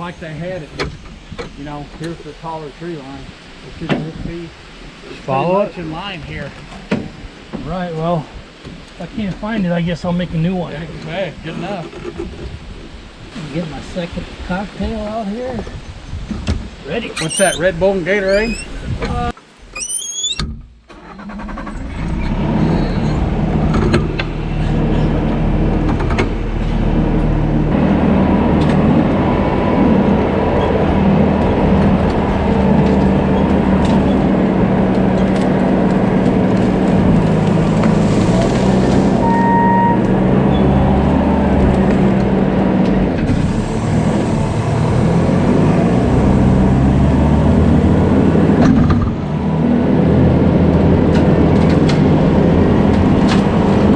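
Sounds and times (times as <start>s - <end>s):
diesel engine running: 21.0s - 53.9s.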